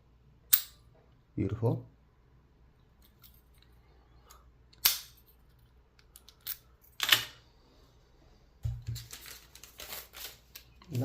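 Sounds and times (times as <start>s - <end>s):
padlock clicks and snaps: 4.7s - 5.2s.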